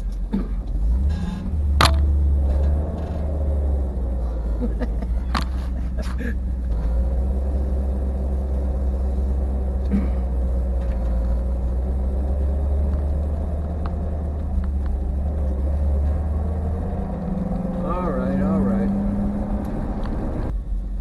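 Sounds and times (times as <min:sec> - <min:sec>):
car engine and tyre rumble: 0:00.0 - 0:21.0.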